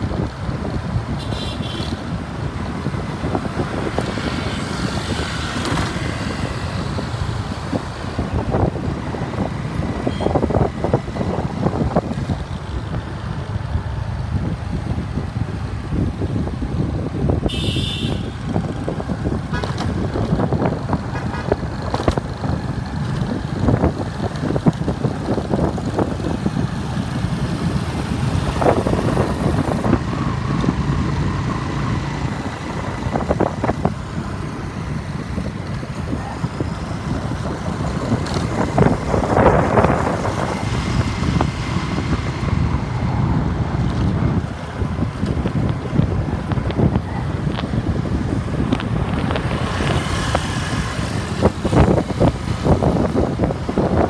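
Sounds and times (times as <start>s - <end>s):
road rumble: 0.0s - 54.0s
short horn beeps: 1.2s - 2.0s, 17.5s - 18.4s.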